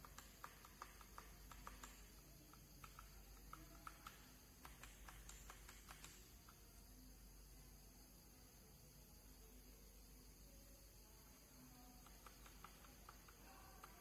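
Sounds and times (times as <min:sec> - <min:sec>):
mechanical keyboard typing: 0:00.0 - 0:06.3.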